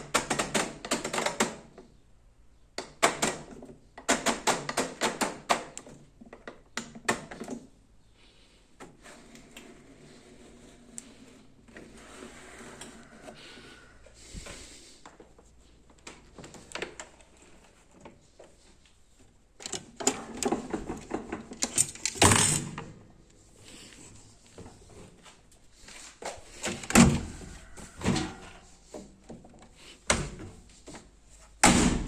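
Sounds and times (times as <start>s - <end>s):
washing machine parts clicking and knocking: 19.6s - 23.0s.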